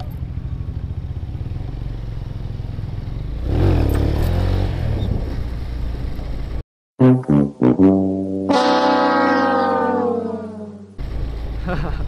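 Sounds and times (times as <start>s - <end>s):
motorcycle engine running: 0.0s - 6.6s, 8.5s - 12.0s.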